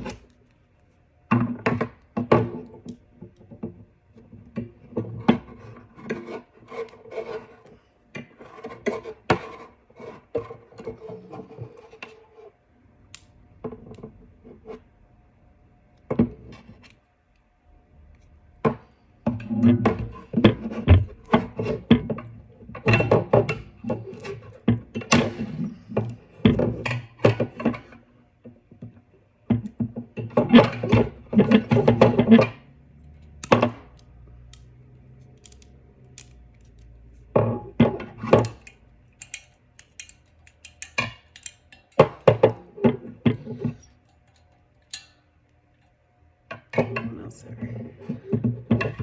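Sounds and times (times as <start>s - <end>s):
metal wire clicking and clanking: 38.2s - 42.5s, 43.7s - 45.3s.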